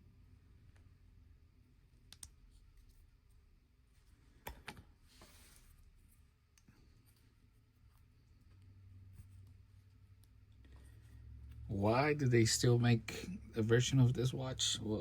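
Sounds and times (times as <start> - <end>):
soft rustle: 2.4 - 11.7.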